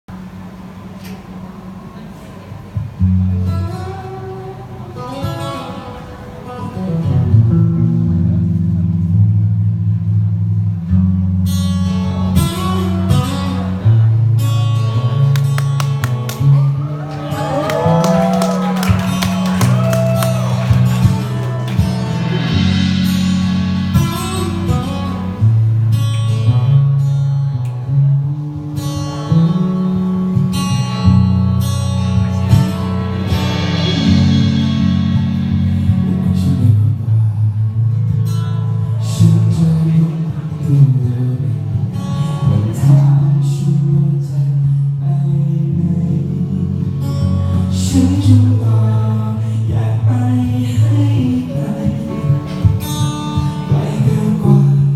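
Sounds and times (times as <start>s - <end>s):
acoustic guitar: 0.1s - 54.9s
deep bass line: 6.9s - 54.9s
person singing: 16.8s - 22.9s, 47.5s - 52.8s.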